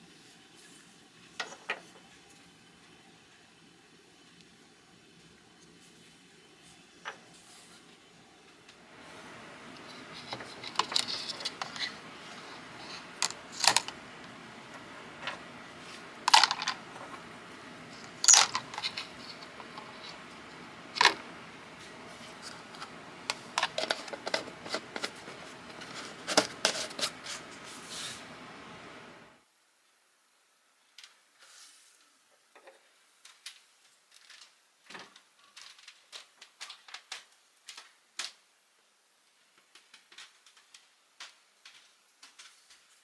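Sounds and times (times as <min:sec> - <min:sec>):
steady hiss: 0:05.8 - 0:29.4
metal hand tools clinking: 0:10.3 - 0:14.0, 0:16.2 - 0:17.3, 0:17.9 - 0:21.2.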